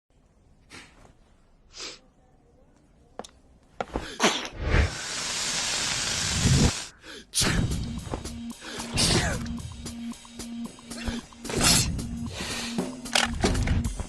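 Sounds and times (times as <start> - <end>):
sniffs: 1.7 - 2.0
cartoon sneeze: 11.5 - 11.9.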